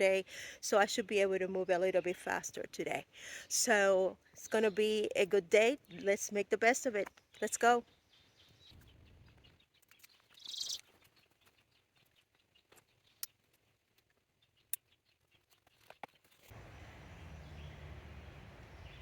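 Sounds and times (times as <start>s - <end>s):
steady low rumbling: 16.6s - 19.0s.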